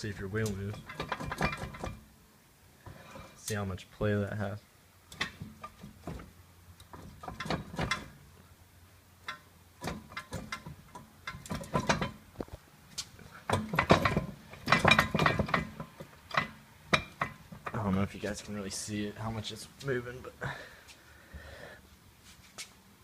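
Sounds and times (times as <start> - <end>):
car wheel clicking and clunking: 0.4 - 2.1, 5.1 - 8.2, 9.2 - 12.4, 13.0 - 18.0.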